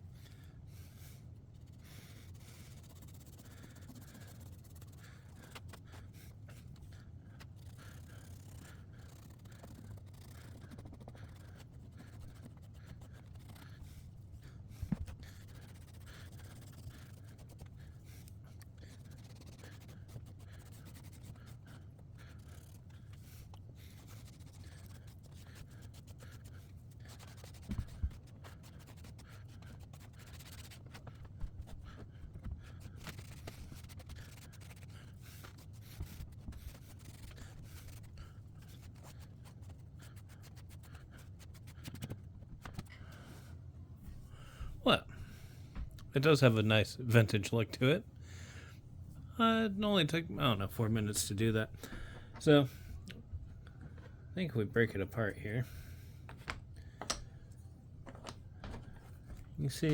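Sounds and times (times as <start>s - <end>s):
damp towel rubbing paper: 1.0s - 43.2s.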